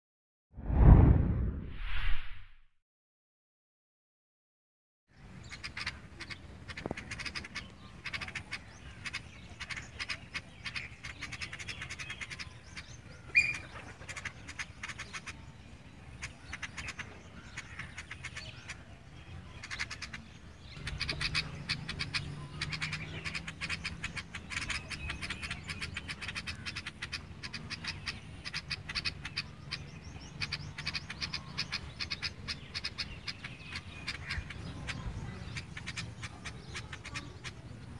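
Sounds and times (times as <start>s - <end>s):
low hum: 0.6s - 2.6s
sparrows chirping: 5.1s - 37.9s.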